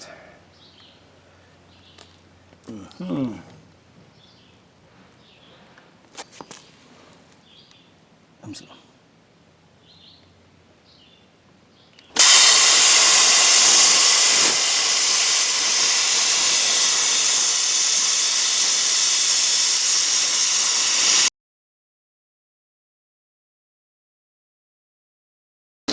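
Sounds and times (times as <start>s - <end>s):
plasma torch cutting hiss: 12.2s - 21.3s.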